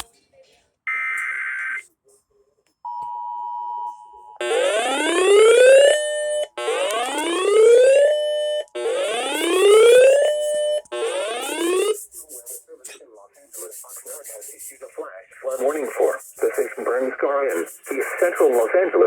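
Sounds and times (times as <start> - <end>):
screechy digital data burst: 15.5 - 18.7.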